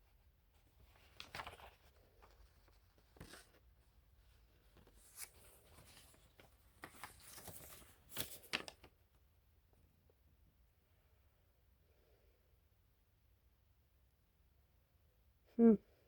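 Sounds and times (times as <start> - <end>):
faint rustles of handling: 0.1 - 9.0.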